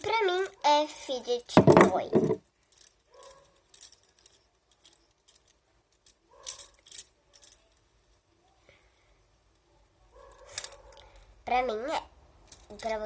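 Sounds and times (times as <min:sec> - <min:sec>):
fidget toy clicks and clinks: 0:00.0 - 0:08.2, 0:10.3 - 0:11.4, 0:12.4 - 0:13.0.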